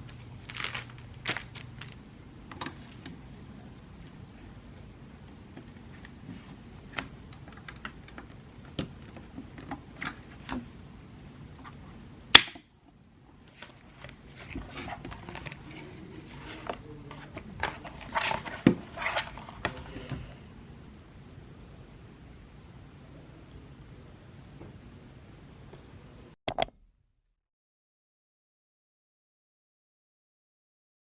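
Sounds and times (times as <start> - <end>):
stationery being handled: 0.0 - 2.0, 13.4 - 19.9, 26.5 - 26.8
sharp loud click: 26.5 - 26.9.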